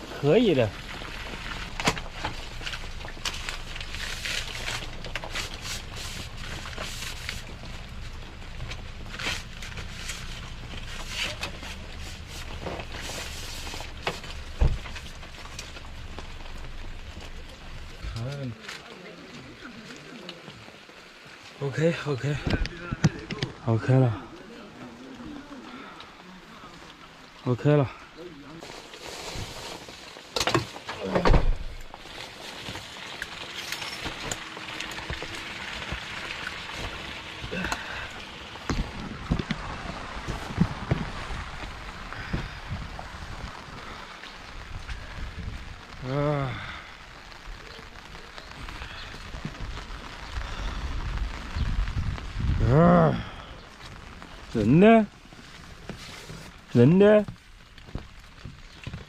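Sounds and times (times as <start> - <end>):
rain falling: 0.0 - 59.0
steady low rumble: 34.9 - 55.9.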